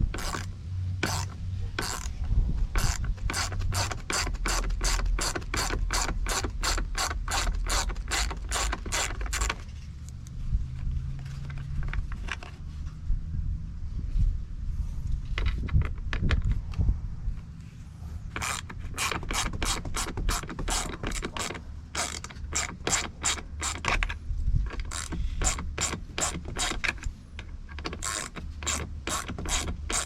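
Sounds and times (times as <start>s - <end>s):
ratchet clicking: 0.0s - 9.7s, 18.3s - 30.0s.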